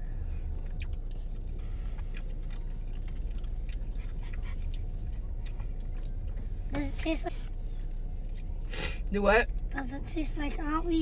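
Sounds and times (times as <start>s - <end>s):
low rumble: 0.0s - 11.0s
person chewing: 0.4s - 6.4s.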